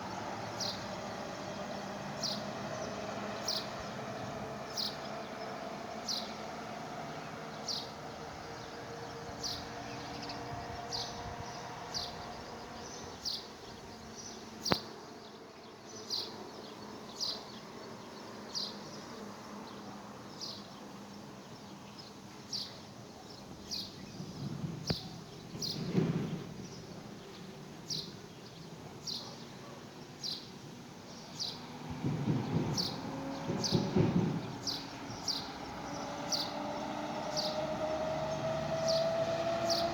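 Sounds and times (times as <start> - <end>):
low rumbling wind gusts: 0.0 - 14.4, 23.4 - 29.0, 30.7 - 39.9.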